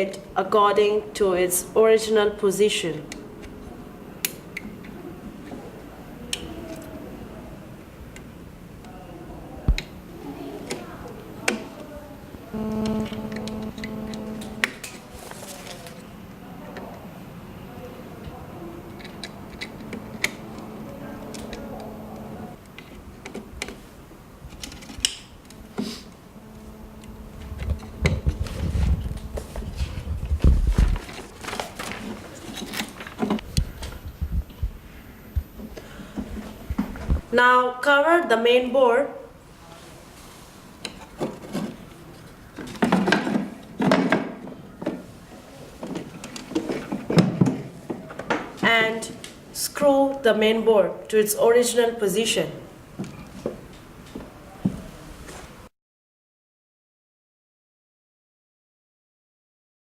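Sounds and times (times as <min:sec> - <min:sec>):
faint steady hum: 0:00.0 - 0:43.8.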